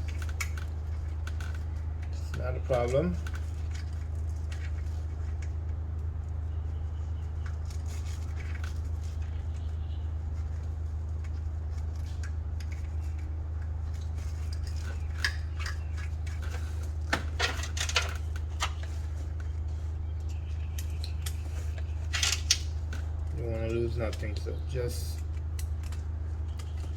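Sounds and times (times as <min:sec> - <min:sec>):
steady low hum: 0:00.0 - 0:26.9
metal tools clinking: 0:22.0 - 0:22.6.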